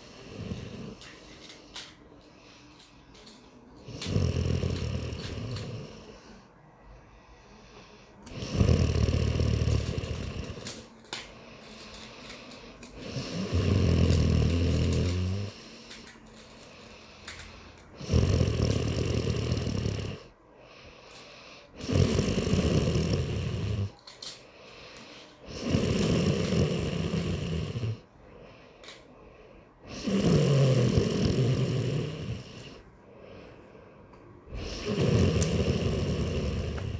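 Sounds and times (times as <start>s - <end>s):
man snoring loudly: 0.0s - 1.0s, 3.8s - 6.1s, 8.3s - 10.7s, 13.0s - 15.6s, 18.0s - 20.3s, 21.8s - 23.9s, 25.5s - 28.0s, 29.9s - 32.8s, 34.5s - 36.9s
quiet breathing: 0.0s - 36.9s.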